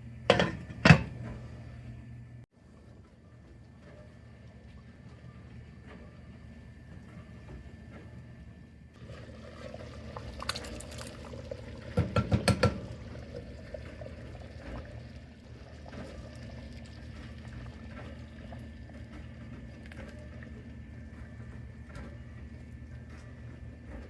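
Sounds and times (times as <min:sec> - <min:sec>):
utensil knocking against pot: 0:12.0 - 0:12.9.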